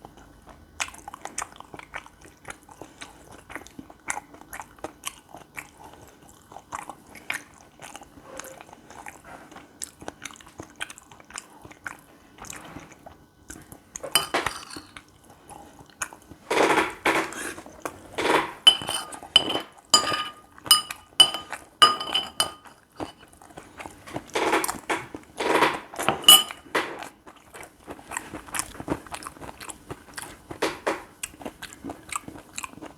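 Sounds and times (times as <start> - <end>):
close-miked chewing: 0.0 - 14.0, 26.6 - 32.9
utensils clattering on dish: 14.1 - 14.9, 18.2 - 23.3, 24.3 - 27.0.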